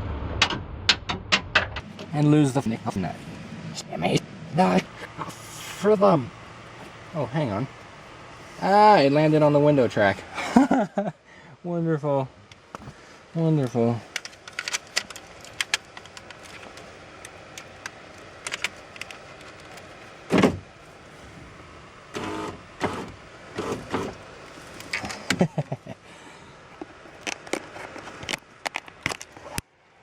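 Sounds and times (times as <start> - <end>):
clicks and rattles of parts: 13.6 - 20.5, 22.8 - 25.5, 26.8 - 29.6
power window motor: 22.1 - 24.7.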